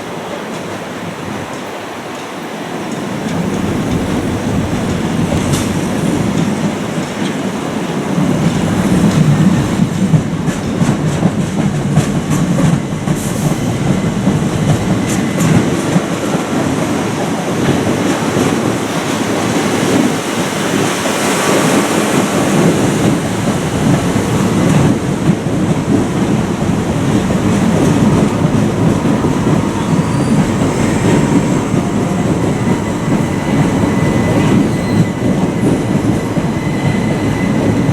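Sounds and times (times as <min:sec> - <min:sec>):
train rumbling: 0:00.0 - 0:37.9.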